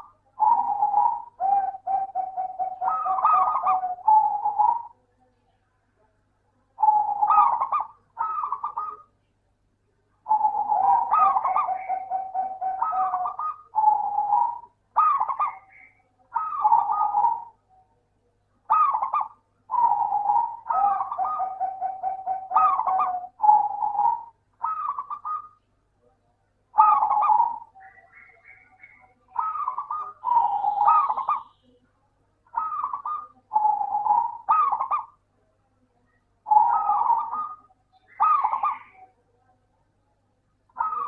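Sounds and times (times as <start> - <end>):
dove cooing: 0.0 - 5.0, 6.8 - 9.1, 10.2 - 17.9, 18.6 - 25.6, 26.7 - 31.8, 32.5 - 35.3, 36.4 - 39.3, 40.7 - 41.0.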